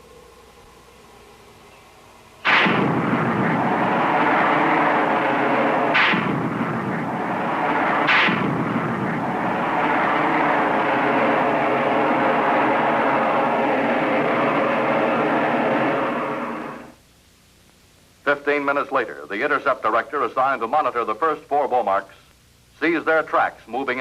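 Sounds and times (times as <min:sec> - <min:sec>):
loud rushing rocket noise: 0:02.4 - 0:17.0
rocket ignition blast: 0:02.4 - 0:17.0.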